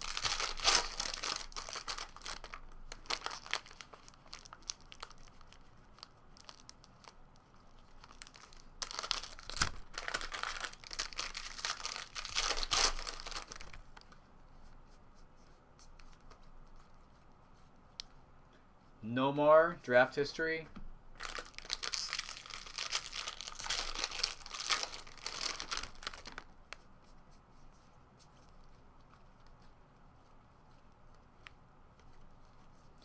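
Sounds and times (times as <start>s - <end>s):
foil wrappers tearing and crinkling: 0.0s - 7.2s, 8.0s - 14.0s, 21.2s - 26.5s.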